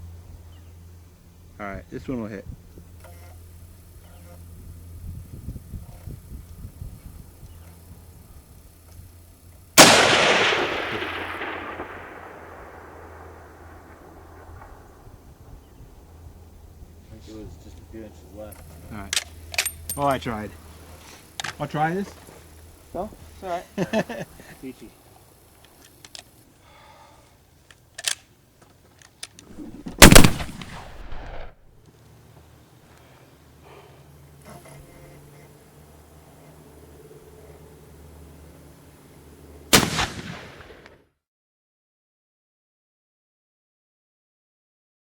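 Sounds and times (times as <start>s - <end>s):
rifle shot with echo: 9.8s - 15.1s, 29.5s - 31.7s, 39.7s - 41.0s.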